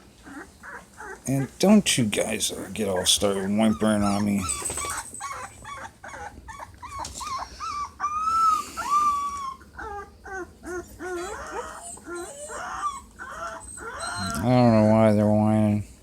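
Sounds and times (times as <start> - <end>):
puppies whimpering and whining: 0.0 - 15.8.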